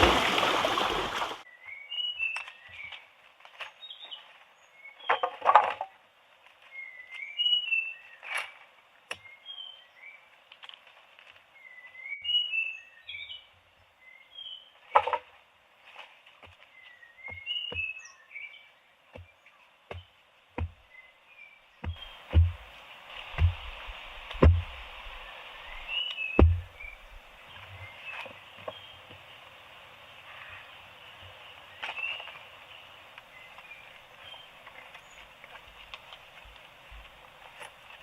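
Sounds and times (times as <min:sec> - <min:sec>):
louder knocks: 0:21.8 - 0:22.6, 0:23.4 - 0:23.7, 0:24.4 - 0:24.8, 0:26.4 - 0:26.7.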